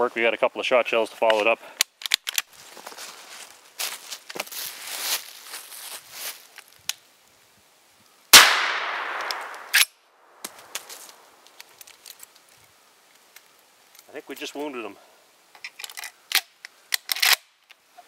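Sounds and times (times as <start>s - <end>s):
faint rustling: 2.4s - 6.9s, 10.4s - 14.9s
loud shotgun shot with echo: 8.4s - 9.8s.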